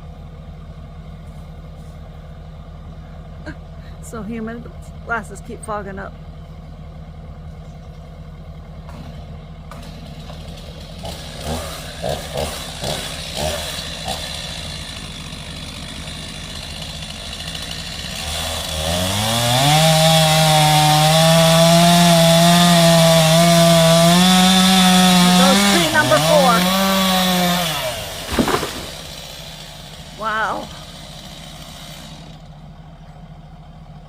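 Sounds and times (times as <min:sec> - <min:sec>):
chainsaw engine revving: 0:08.9 - 0:32.6.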